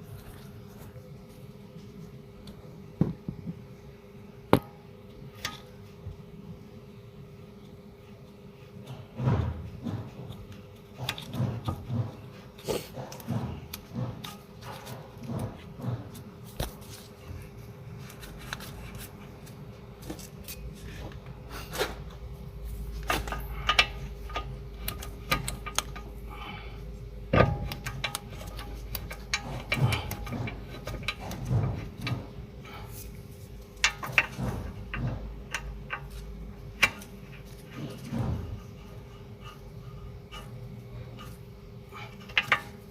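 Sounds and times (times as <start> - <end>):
faint steady hum: 0.0 - 42.9
metal clanks of hand tools: 27.3 - 32.4.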